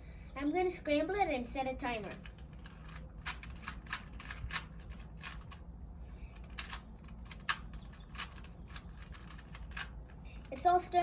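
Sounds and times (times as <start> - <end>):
plastic puzzle cube clicking: 6.4 - 9.9.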